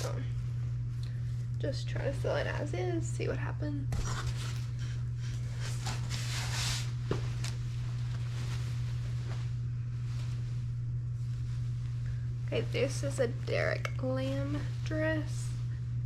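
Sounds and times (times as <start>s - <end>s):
low electrical hum: 0.0s - 16.0s
clothes rustling: 5.4s - 15.9s.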